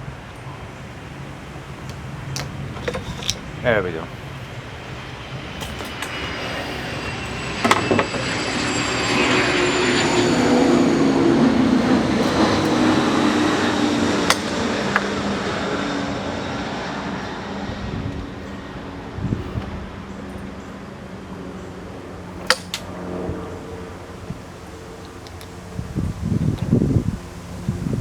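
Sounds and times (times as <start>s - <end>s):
passing vehicle rumble: 0.7s - 20.2s.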